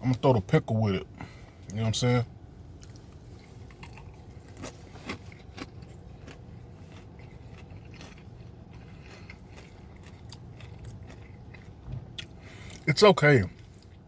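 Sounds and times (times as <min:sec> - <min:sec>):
crisp food crunching: 0:02.8 - 0:14.0
chewing clicks: 0:03.7 - 0:12.8.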